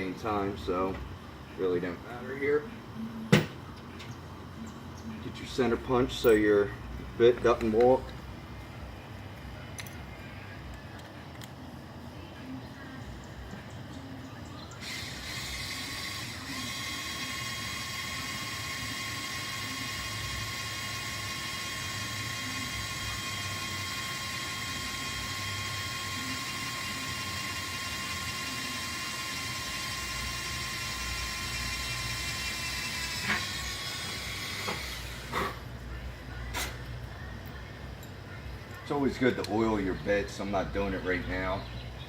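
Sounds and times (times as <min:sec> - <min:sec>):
electric drill whining through metal: 0:14.8 - 0:35.6.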